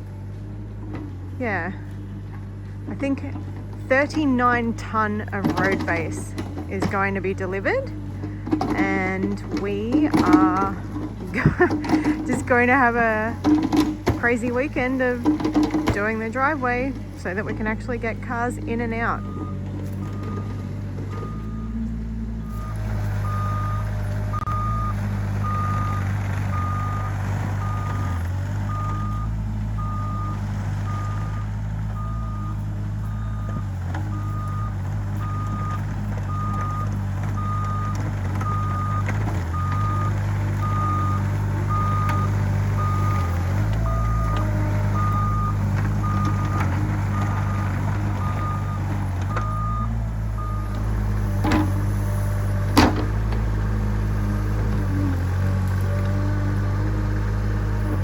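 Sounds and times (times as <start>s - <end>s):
diesel engine running: 0.0s - 58.0s
warning alarm beeps: 8.7s - 26.0s, 26.6s - 50.8s.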